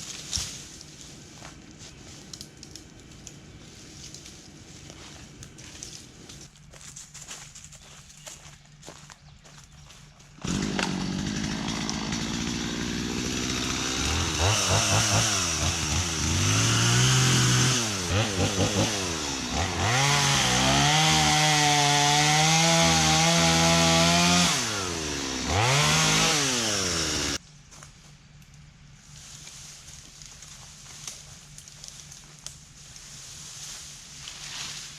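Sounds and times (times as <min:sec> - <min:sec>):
small engine revving: 0:10.4 - 0:27.4.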